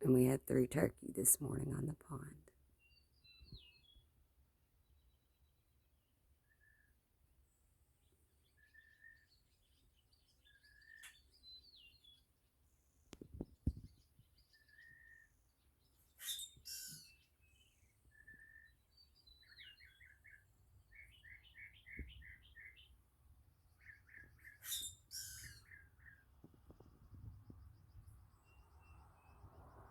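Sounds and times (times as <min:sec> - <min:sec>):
birds chirping: 0:08.4 - 0:12.5, 0:13.3 - 0:29.5
grackle harsh squeaky calls: 0:16.2 - 0:17.1, 0:24.5 - 0:25.8.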